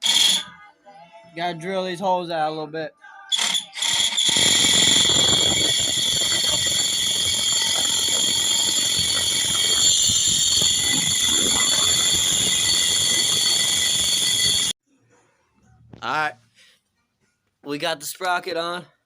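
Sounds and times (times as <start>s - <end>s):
electric drill drilling metal: 0.0s - 0.4s, 3.3s - 14.8s.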